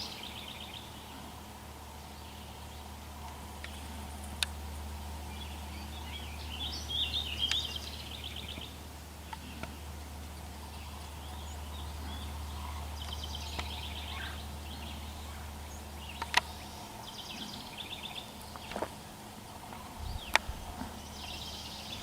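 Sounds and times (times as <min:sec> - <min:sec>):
low rumble: 0:00.0 - 0:22.0
small birds chirping: 0:00.0 - 0:22.0
sharp clicks: 0:16.2 - 0:16.5.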